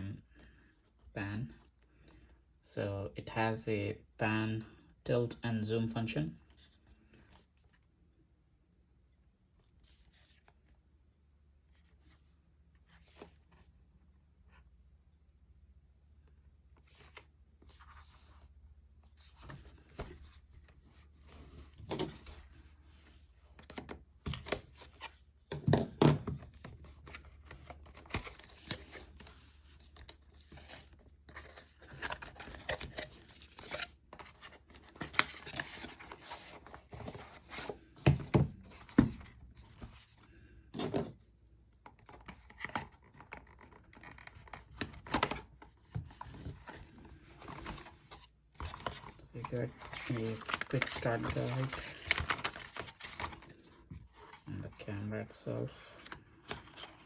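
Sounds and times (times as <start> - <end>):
cardboard and wrapping rustling: 16.8 - 40.2, 41.9 - 54.9.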